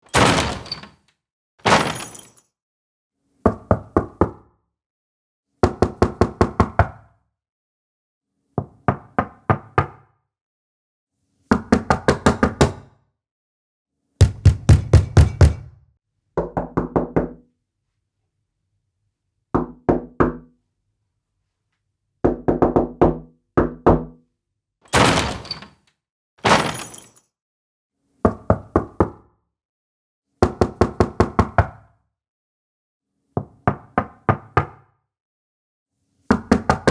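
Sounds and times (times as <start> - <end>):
door knocking: 14.2 - 15.8.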